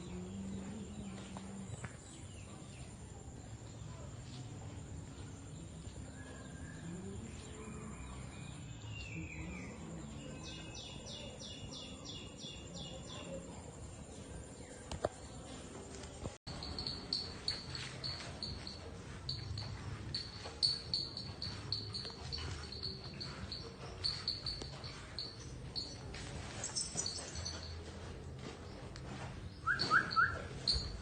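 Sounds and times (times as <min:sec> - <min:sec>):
bird calling: 0:29.6 - 0:31.0.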